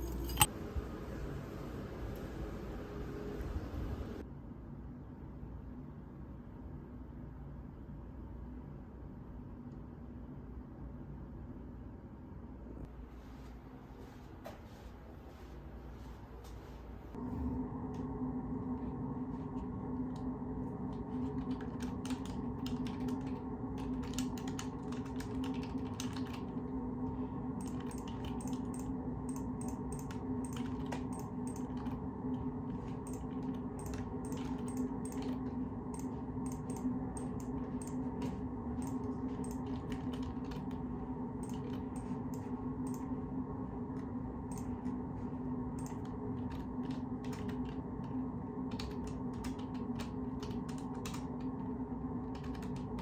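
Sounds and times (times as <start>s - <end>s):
steady low hum: 0.0s - 53.0s
keyboard keystroke clicks: 33.1s - 35.4s.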